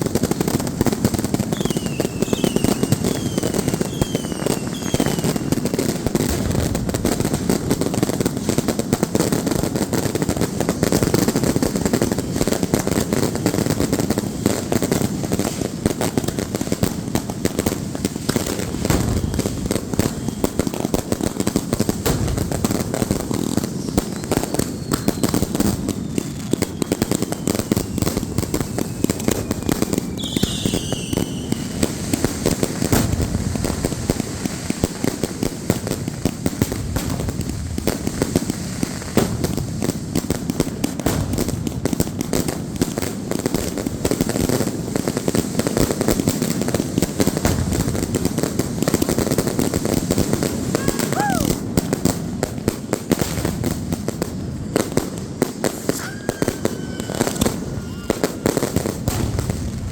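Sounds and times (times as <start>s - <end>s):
firecrackers popping and crackling: 0.0s - 59.9s
thin falling whistle: 1.6s - 5.5s, 30.2s - 31.6s, 56.0s - 57.2s
short shrill whistle: 1.6s - 5.6s, 30.1s - 31.7s, 55.9s - 58.5s.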